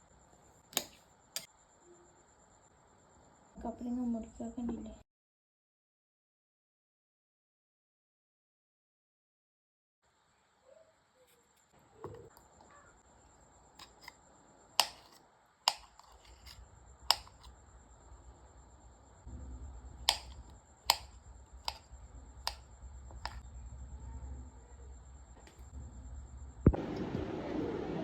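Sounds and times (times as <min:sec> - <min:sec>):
low hum: 0:17.6 - 0:28.0.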